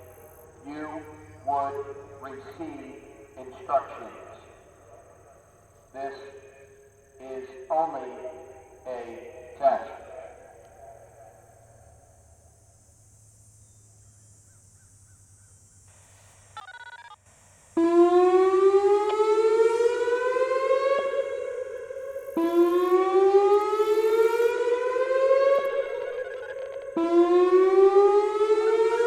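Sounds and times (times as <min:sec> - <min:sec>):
warning siren whoop tone: 0:17.8 - 0:29.0.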